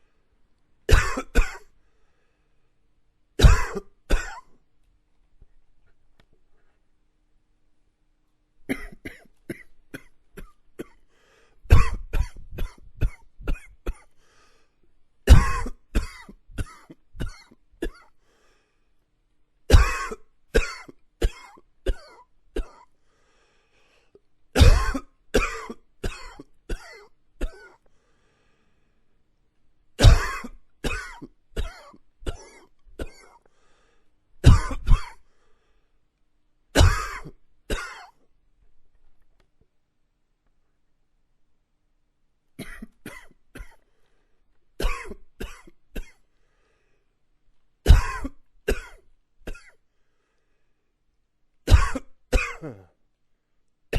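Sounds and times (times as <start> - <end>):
man coughing: 0.9 - 1.7, 3.4 - 4.6, 8.7 - 11.0, 11.7 - 14.1, 15.3 - 18.1, 19.7 - 22.9, 24.6 - 27.8, 30.0 - 33.4, 34.4 - 35.2, 36.8 - 38.2, 42.6 - 43.8, 44.8 - 46.2, 47.9 - 49.8, 51.7 - 53.0.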